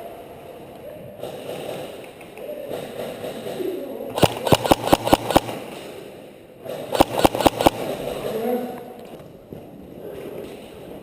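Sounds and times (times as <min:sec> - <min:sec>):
airsoft gun shots: 0:04.2 - 0:05.9, 0:06.8 - 0:08.1.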